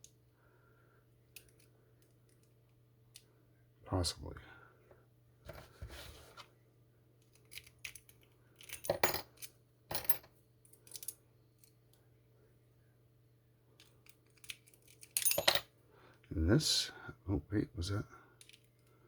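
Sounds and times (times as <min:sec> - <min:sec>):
lock pick clicking and rattling: 0:13.8 - 0:15.5.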